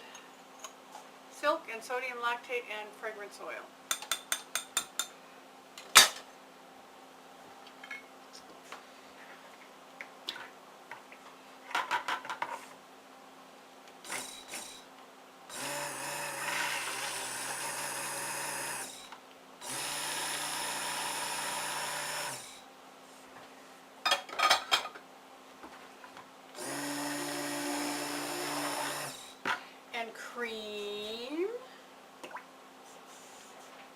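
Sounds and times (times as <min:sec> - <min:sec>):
stick blender running: 0:14.0 - 0:14.8, 0:15.5 - 0:22.6, 0:26.6 - 0:29.4.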